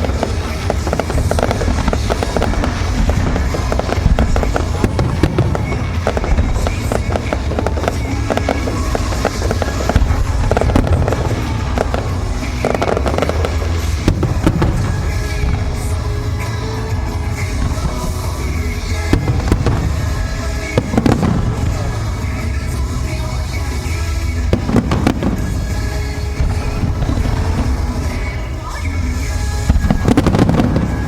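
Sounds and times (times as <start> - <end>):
low rumble of bursting shells: 0.0 - 23.2
fireworks crackling: 0.0 - 31.0.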